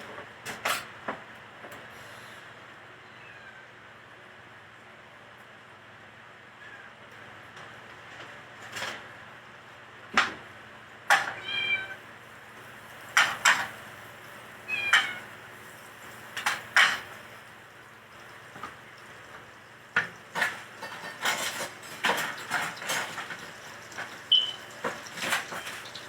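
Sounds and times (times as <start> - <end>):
kitchen knocks and clatters: 0.0 - 1.8, 11.1 - 11.4, 13.1 - 13.8, 16.3 - 17.2, 19.9 - 26.0
cat meowing: 3.0 - 3.8, 11.3 - 12.0, 14.7 - 15.3.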